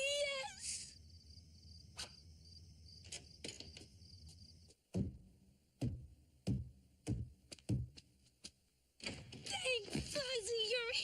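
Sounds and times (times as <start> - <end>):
crickets chirping: 0.0 - 5.0
heavy thumps: 4.8 - 8.2.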